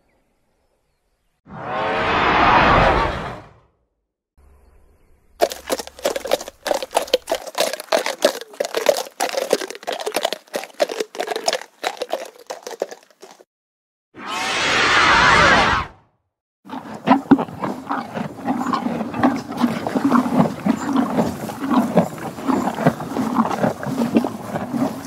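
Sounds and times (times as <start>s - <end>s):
horse chewing feed: 5.4s - 13.4s, 16.7s - 25.0s.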